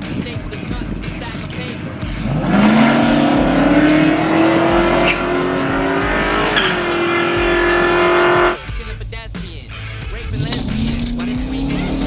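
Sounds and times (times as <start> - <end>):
tyres squealing: 0.0 - 8.6
car engine revving: 0.0 - 12.0.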